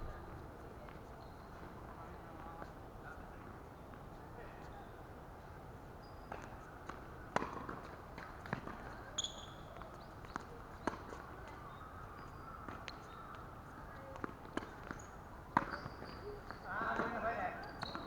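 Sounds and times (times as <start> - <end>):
tennis ball struck and bouncing: 7.4 - 8.8, 15.6 - 16.2.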